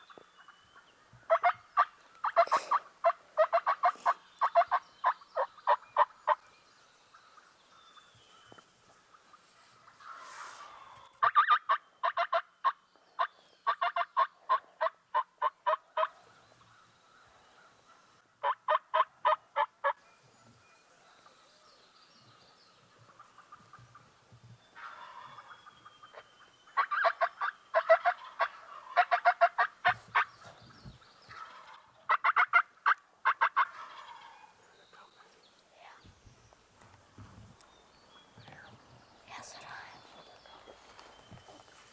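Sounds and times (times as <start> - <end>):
wild turkey yelping: 1.3 - 6.4, 9.4 - 12.8, 13.7 - 16.8, 17.8 - 20.0, 24.8 - 30.6, 31.3 - 34.6.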